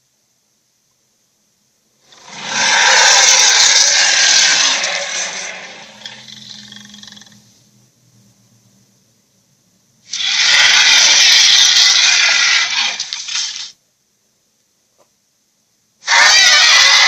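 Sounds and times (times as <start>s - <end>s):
breathy dragon roar: 2.1s - 7.4s, 10.2s - 13.0s, 16.1s - 17.0s.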